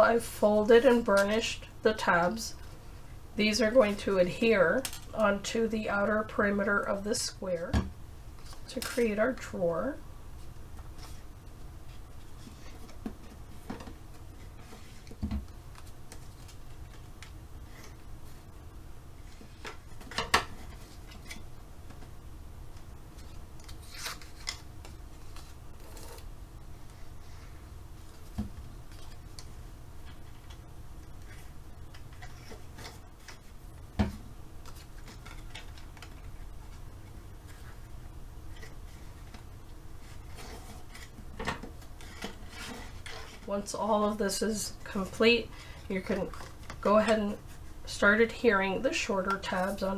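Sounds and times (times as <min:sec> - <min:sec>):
steady low hum: 0:00.0 - 0:49.9.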